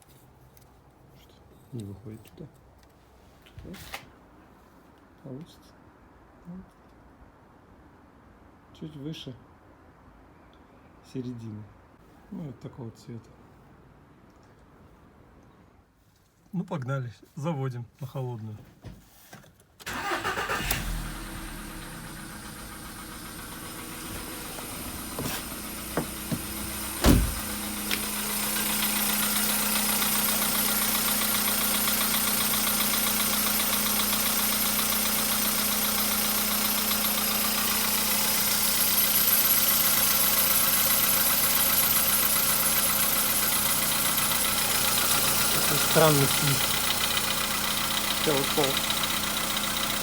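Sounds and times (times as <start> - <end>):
car engine starting and idling: 19.8 - 50.0.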